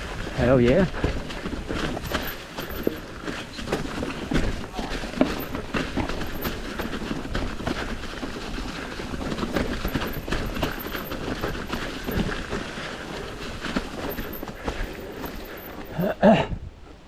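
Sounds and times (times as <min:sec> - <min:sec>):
bike rattling: 0:00.0 - 0:16.1
tyres rolling over dirt and rocks: 0:00.0 - 0:16.2.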